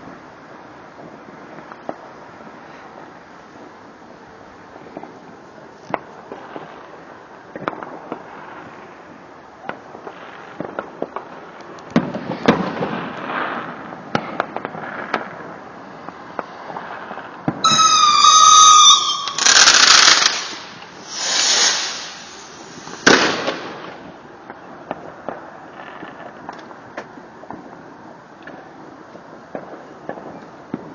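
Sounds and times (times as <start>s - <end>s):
firework pops and crackles: 0.0s - 30.9s
firework rushing bursts: 9.8s - 25.6s
firework bang: 11.9s - 15.4s, 16.1s - 24.2s
firework warbling whistle: 17.6s - 24.0s.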